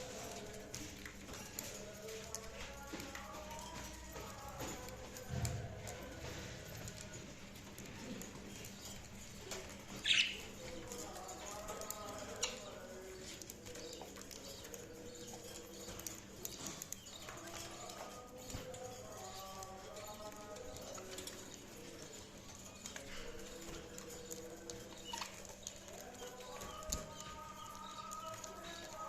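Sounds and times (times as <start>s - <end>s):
budgies chirping: 8.2s - 29.0s
budgerigars chirping: 10.0s - 10.4s.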